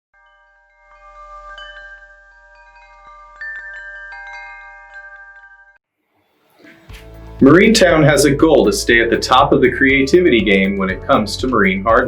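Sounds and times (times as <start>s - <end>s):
chimes ringing: 0.2s - 5.8s.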